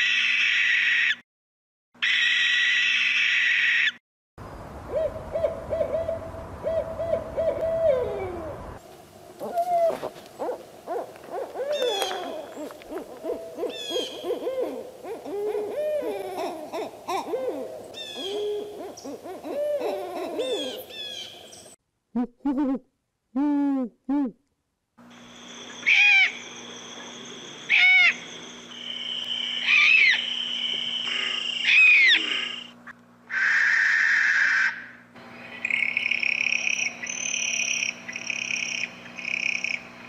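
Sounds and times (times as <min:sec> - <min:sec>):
owls hooting: 0:04.9 - 0:08.6, 0:09.4 - 0:21.5, 0:25.7 - 0:39.8.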